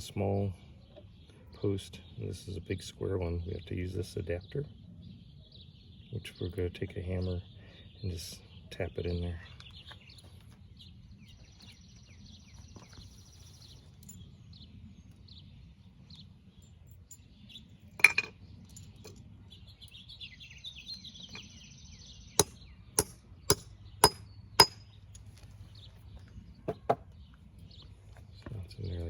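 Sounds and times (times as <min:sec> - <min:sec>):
birds chirping faintly: 0:00.0 - 0:29.0
hammer tapping metal: 0:22.4 - 0:24.8.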